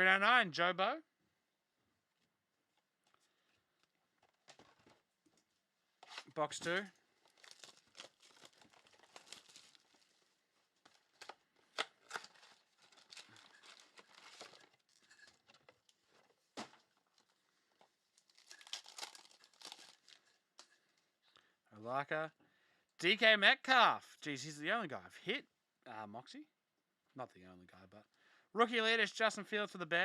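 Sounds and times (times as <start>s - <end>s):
plastic wrapping crinkling and tearing: 6.0s - 20.8s.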